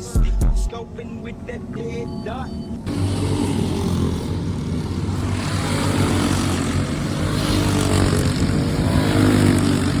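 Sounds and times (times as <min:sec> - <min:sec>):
quadcopter motors whirring: 0:02.2 - 0:10.0.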